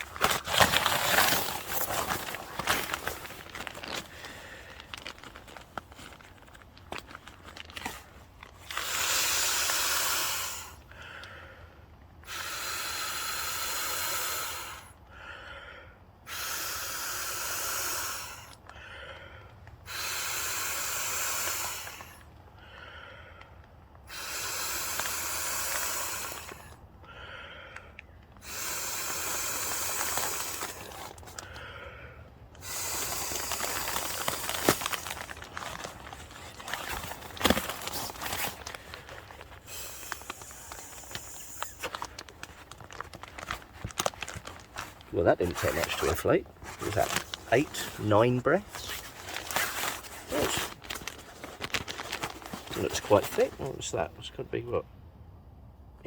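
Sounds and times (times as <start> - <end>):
breath drawn in: 0.0 - 11.6, 12.2 - 23.4, 24.1 - 54.4
breaths blown into a valve: 8.6 - 10.8, 12.2 - 14.9, 16.2 - 18.6, 19.8 - 22.2, 24.1 - 26.8, 28.4 - 31.8, 32.6 - 51.5.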